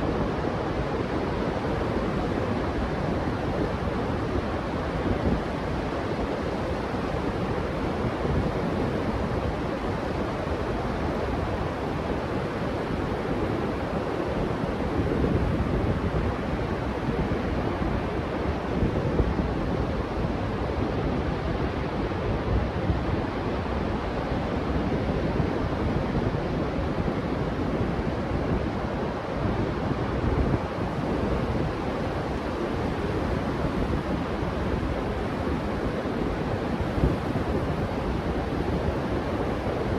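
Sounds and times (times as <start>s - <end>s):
surf washing on beach: 0.0s - 39.9s
wind rumbling on microphone: 0.0s - 39.9s.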